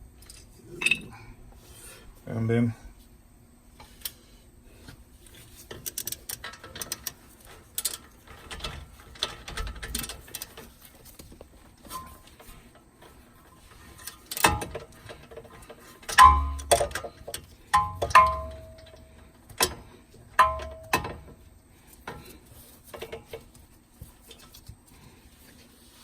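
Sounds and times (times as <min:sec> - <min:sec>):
ringing metallic knocks: 0:16.2 - 0:17.1, 0:17.8 - 0:19.1, 0:20.4 - 0:21.2.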